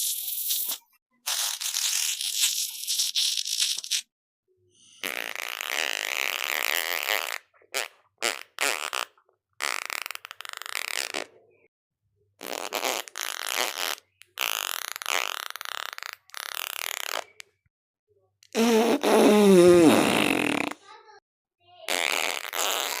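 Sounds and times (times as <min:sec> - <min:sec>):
fart sounds: 0:05.0 - 0:11.4, 0:12.4 - 0:17.4, 0:18.5 - 0:20.8, 0:21.9 - 0:23.0.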